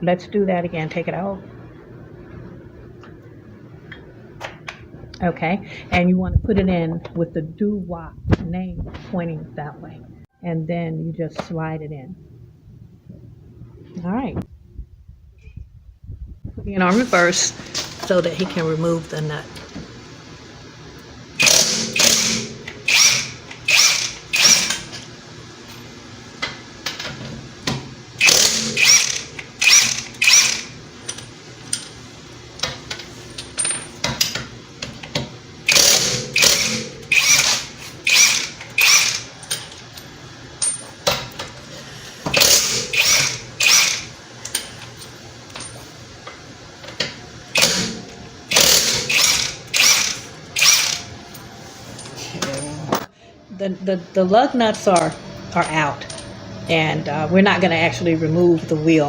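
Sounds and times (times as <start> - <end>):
impact wrench hammering: 21.4 - 25.0, 27.7 - 31.9, 35.7 - 39.8, 42.2 - 44.7, 47.6 - 51.1
impact wrench motor running: 21.4 - 25.1, 28.2 - 31.9, 35.6 - 39.7, 42.2 - 44.2, 47.5 - 51.1.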